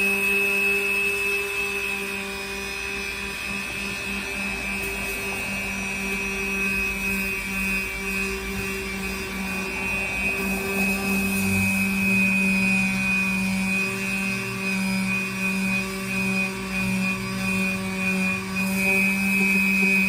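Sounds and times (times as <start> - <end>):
electric sander running: 0.0 - 20.0.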